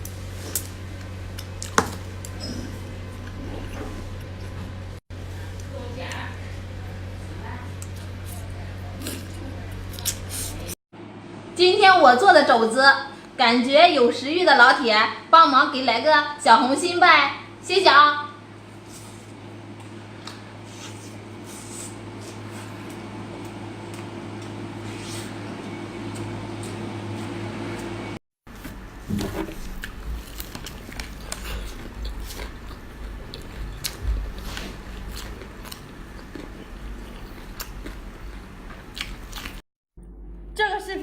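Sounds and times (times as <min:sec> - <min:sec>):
steady low hum: 0:00.0 - 0:41.0
chewing meat with wet mouth noises: 0:29.6 - 0:39.6.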